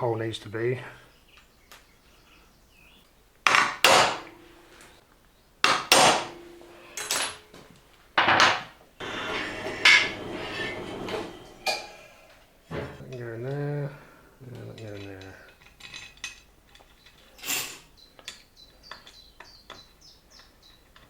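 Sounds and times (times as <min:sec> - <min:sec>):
metal-on-metal strikes: 0:03.5 - 0:04.8, 0:05.6 - 0:07.6
rough metal rattling clatter: 0:14.7 - 0:17.5.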